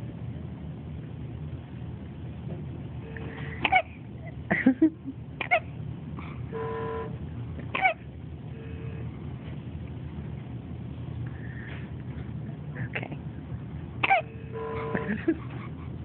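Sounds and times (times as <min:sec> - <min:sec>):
baby hiccuping: 0:14.0 - 0:15.1.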